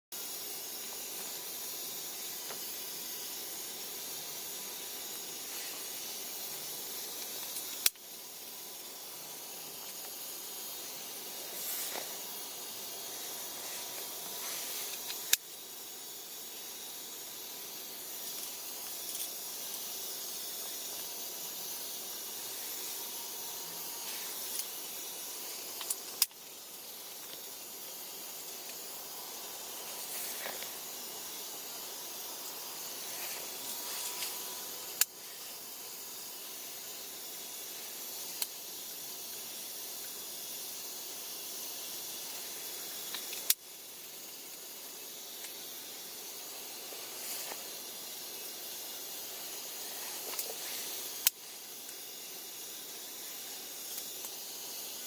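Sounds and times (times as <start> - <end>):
steady high hiss: 0.0 - 55.0
sharp clicks: 7.2 - 8.1.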